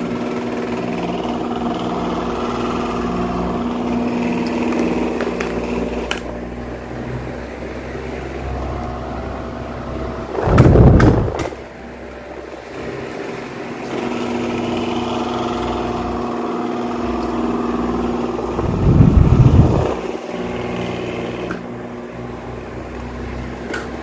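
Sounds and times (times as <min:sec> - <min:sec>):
wind blast on microphone: 0:10.3 - 0:11.6, 0:18.5 - 0:20.1
truck engine running: 0:14.4 - 0:20.2.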